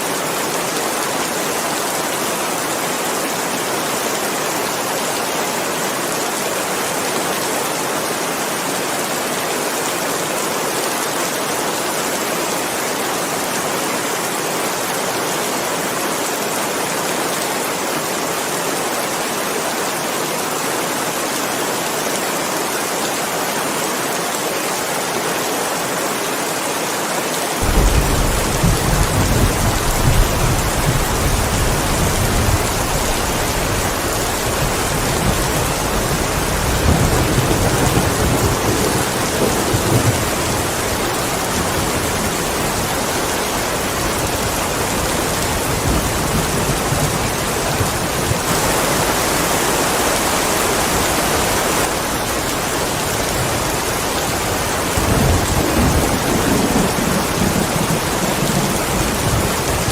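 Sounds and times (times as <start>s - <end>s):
deep thunder rumble: 27.6s - 40.2s
heavy rain hissing: 27.6s - 59.9s.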